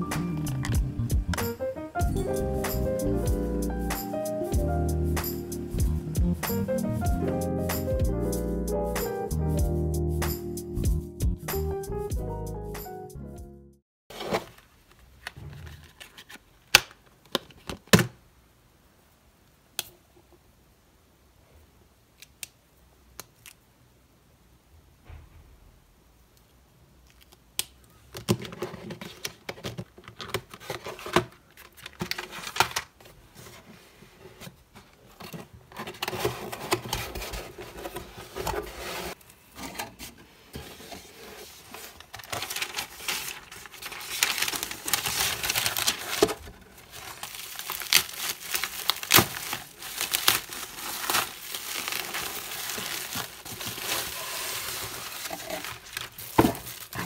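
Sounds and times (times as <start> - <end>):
packaging crinkling and rustling: 14.1 - 18.0, 28.2 - 57.0.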